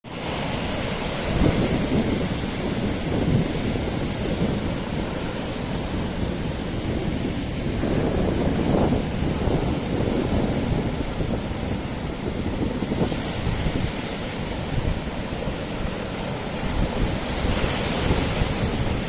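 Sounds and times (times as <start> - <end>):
sea waves on shore: 0.0 - 19.0
wind buffeting microphone: 0.1 - 19.0.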